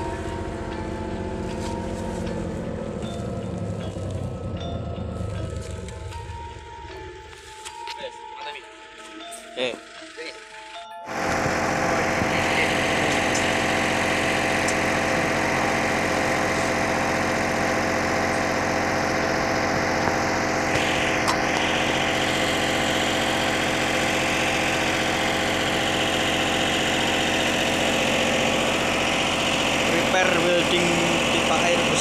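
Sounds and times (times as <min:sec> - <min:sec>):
generator engine running: 0:00.0 - 0:32.0.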